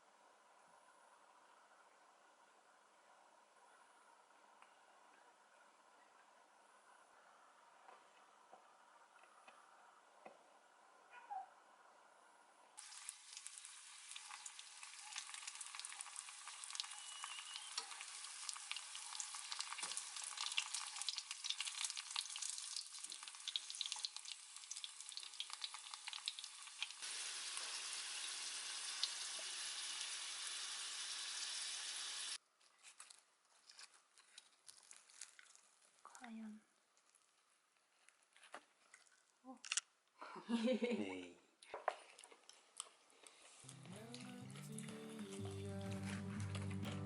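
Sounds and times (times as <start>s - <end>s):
food sizzling in oil: 12.8s - 32.4s.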